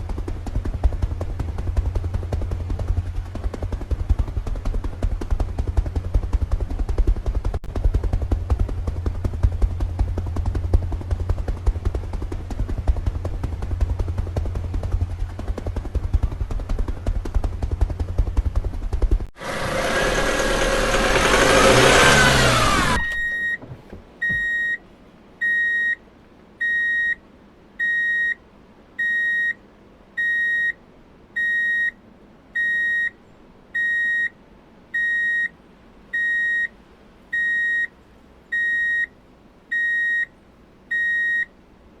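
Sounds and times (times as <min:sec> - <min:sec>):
loud rising and falling rush: 0:19.4 - 0:24.4
high electronic beeps: 0:23.0 - 0:24.8.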